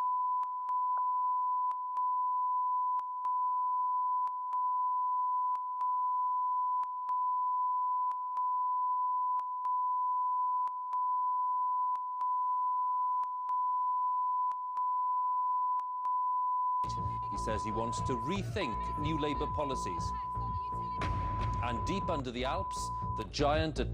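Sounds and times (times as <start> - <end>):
high-pitched test tone: 16.8 - 23.4.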